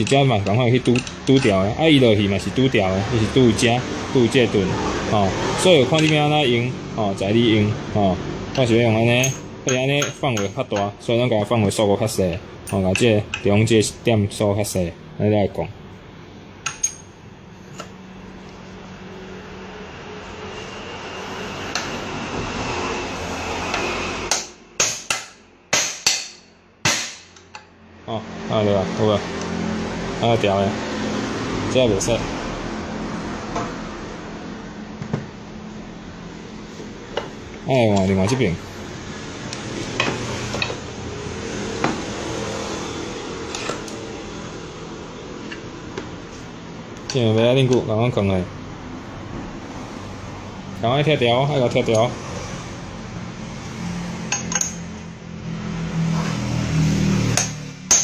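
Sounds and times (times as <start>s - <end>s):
metallic knocks: 57.3s - 58.0s.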